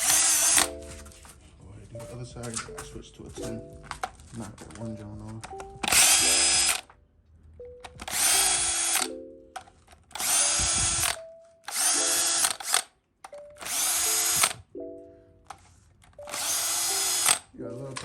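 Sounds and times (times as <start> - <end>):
cordless power tool spinning bolts: 0.0 - 0.7, 5.8 - 6.8, 8.0 - 9.1, 10.1 - 12.9, 13.6 - 14.6, 16.3 - 17.4.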